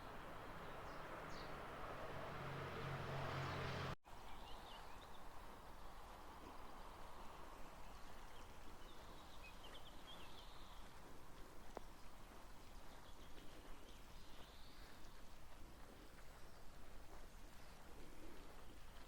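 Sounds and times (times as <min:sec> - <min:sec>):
distant birds chirping: 0:00.0 - 0:04.0.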